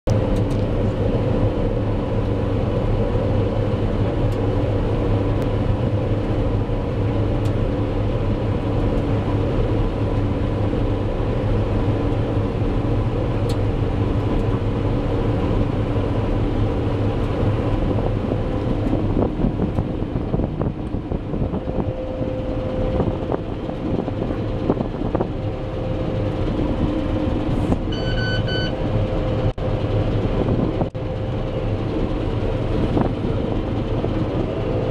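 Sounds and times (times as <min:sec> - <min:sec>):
combine harvester drone: 0:00.1 - 0:34.9
short electronic beep: 0:27.9 - 0:28.8.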